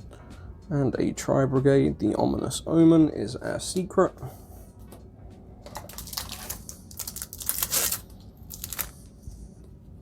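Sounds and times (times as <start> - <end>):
foil wrapper crinkling and tearing: 5.7 - 9.1.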